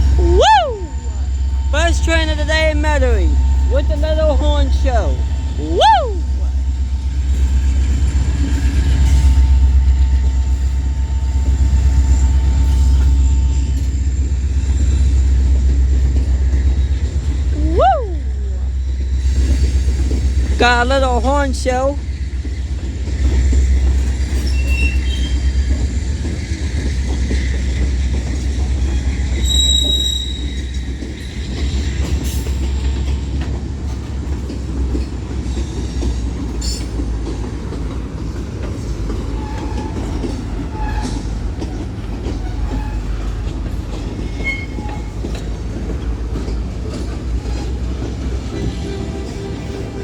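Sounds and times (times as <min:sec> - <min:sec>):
freight train rumbling past: 0:00.0 - 0:50.0
wheel clacks over rail joints: 0:22.3 - 0:50.0
high wheel squeals: 0:24.2 - 0:26.7, 0:28.4 - 0:32.9, 0:38.8 - 0:45.9.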